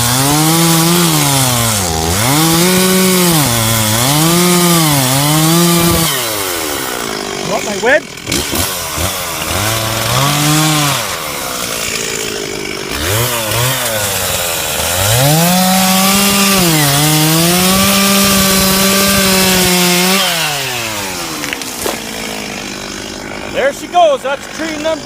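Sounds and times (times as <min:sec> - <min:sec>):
chainsaw revving and cutting: 0:00.0 - 0:25.0.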